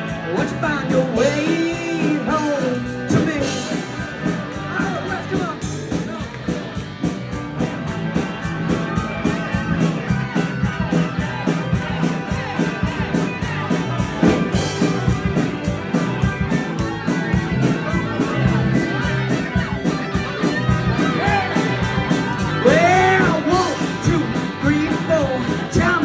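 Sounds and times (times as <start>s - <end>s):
bass guitar: 0.0s - 26.0s
lead guitar: 0.0s - 26.0s
steady drum beat: 0.0s - 26.0s.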